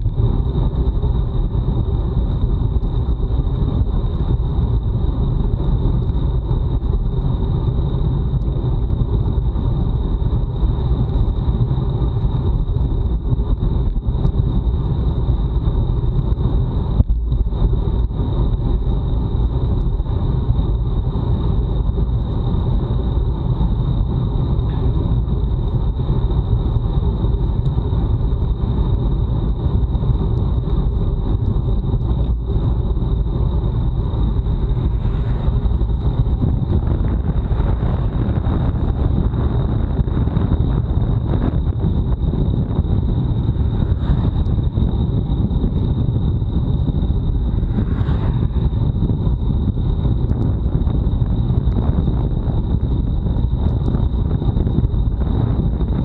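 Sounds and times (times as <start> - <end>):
tyre and road rumble: 0.0 - 56.0
wind rushing over microphone: 0.0 - 56.0
thin high whine: 15.5 - 56.0.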